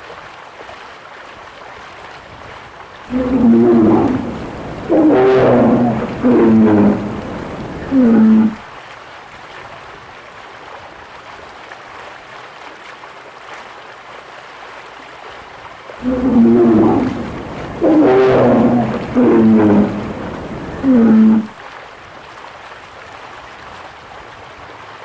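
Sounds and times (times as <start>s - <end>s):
bear roaring calls: 3.1s - 8.6s, 16.0s - 21.6s
steady hiss: 3.1s - 8.6s, 16.0s - 21.5s.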